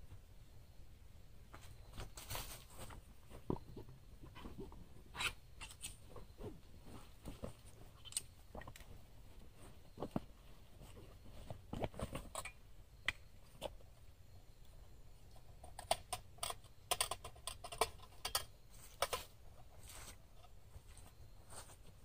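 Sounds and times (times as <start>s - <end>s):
camp gear clicking and rustling: 1.6s - 12.6s.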